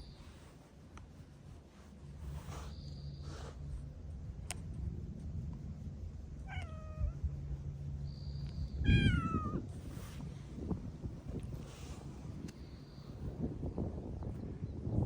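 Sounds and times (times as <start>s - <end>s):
cat meowing: 6.5s - 7.2s, 8.8s - 9.6s.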